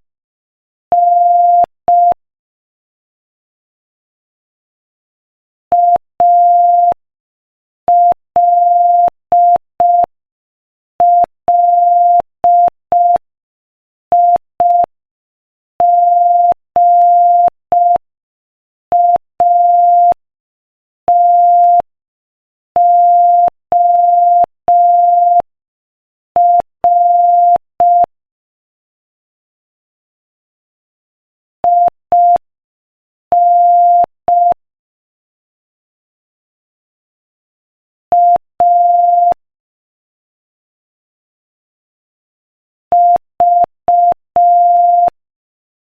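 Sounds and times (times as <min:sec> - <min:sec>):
morse code beeps: 0:11.0 - 0:13.2, 0:15.8 - 0:18.0, 0:18.9 - 0:20.2, 0:21.1 - 0:21.9, 0:22.8 - 0:25.4, 0:26.4 - 0:28.1, 0:31.6 - 0:32.4, 0:33.4 - 0:34.6, 0:38.1 - 0:39.4, 0:43.0 - 0:45.2.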